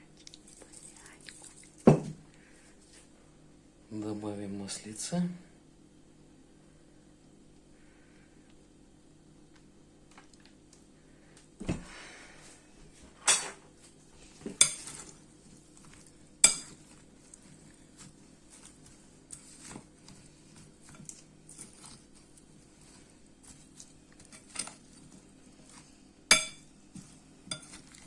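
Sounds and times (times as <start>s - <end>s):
cutlery clinking against a dish: 13.3s - 13.6s, 14.6s - 15.1s, 16.4s - 16.9s, 26.3s - 26.7s, 27.5s - 28.0s.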